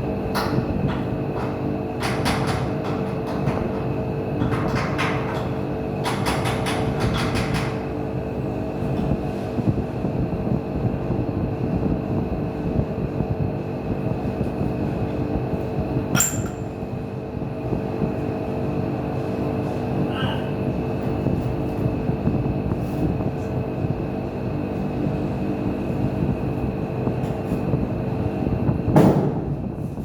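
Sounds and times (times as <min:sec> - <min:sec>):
low mechanical rumble and hum: 0:00.0 - 0:30.0
sharp metallic clink: 0:16.2 - 0:16.8.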